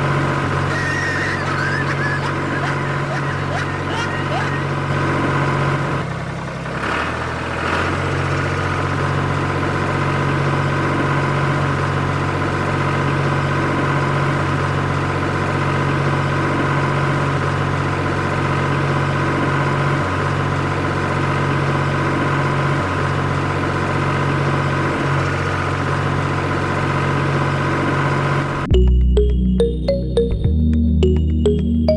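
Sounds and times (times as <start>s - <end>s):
tractor engine running: 0.0s - 31.9s.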